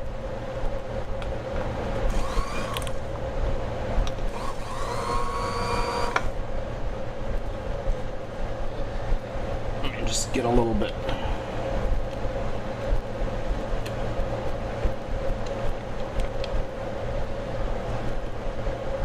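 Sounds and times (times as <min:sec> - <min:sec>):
steady hum: 0:00.0 - 0:19.0
sewing machine whine: 0:02.1 - 0:03.0, 0:04.3 - 0:06.3.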